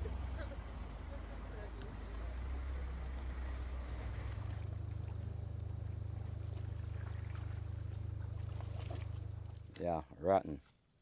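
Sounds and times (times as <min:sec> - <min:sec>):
low steady rumble: 0:00.0 - 0:10.3.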